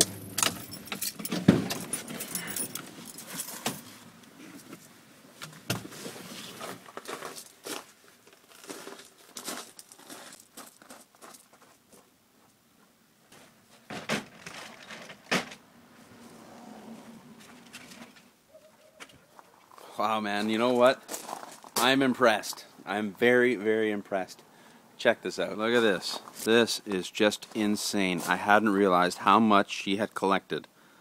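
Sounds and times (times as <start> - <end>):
handling jangling: 0.4 - 4.0.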